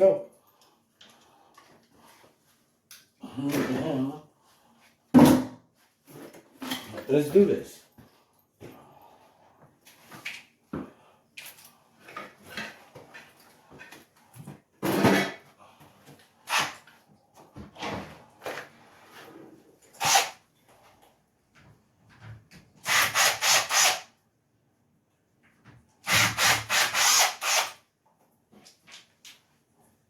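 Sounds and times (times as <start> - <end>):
sharp tool strokes: 20.0 - 20.4, 22.9 - 24.1, 26.1 - 27.8.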